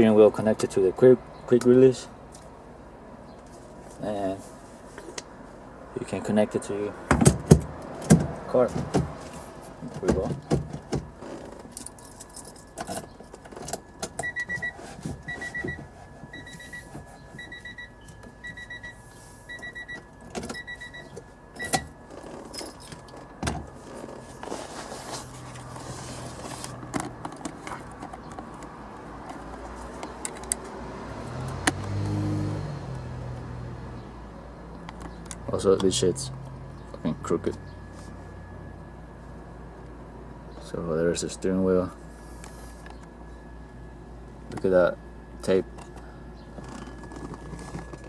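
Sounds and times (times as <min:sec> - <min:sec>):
car warning chime beeping: 0:13.8 - 0:23.4.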